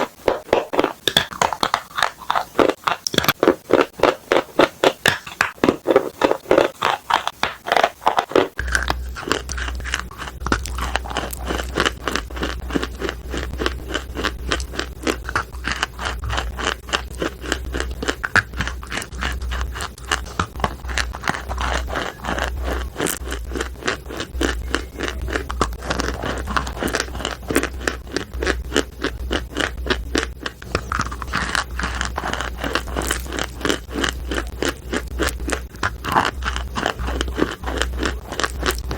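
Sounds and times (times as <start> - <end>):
chalk crunching while chewed: 0.0 - 38.9
low hum: 8.6 - 38.9.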